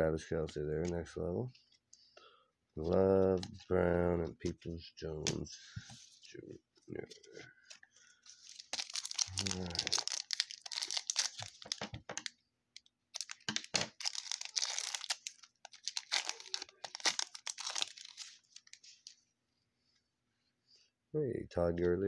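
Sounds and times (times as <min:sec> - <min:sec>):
wrapper tearing and crinkling: 0:08.3 - 0:12.3, 0:13.1 - 0:19.2.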